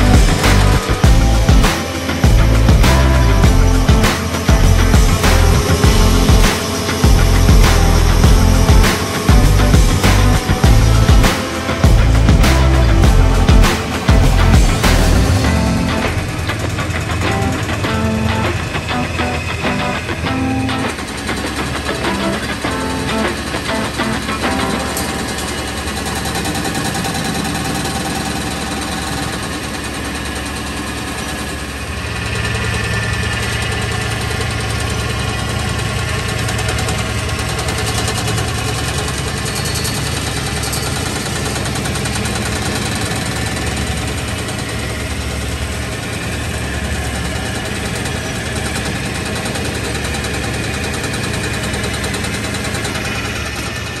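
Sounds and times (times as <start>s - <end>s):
deep hum: 0.0s - 21.0s
farm machinery engine running: 0.0s - 54.0s.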